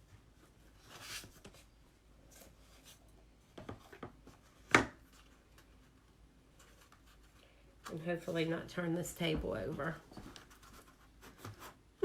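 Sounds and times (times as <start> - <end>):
soft handling noises: 0.0 - 11.8.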